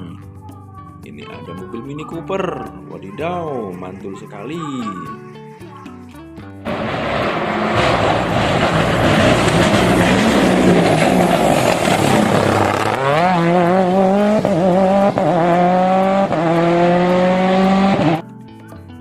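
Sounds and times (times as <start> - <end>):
loud rushing noise: 6.7 - 14.8
car engine revving: 6.7 - 18.2.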